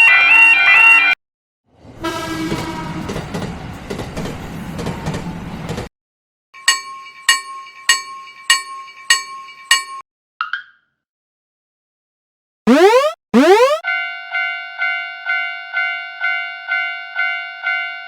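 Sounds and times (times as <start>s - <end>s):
train rumbling by: 1.7s - 5.9s
train horn: 2.0s - 3.3s
railroad crossing bell ringing: 6.6s - 10.0s, 13.8s - 18.0s.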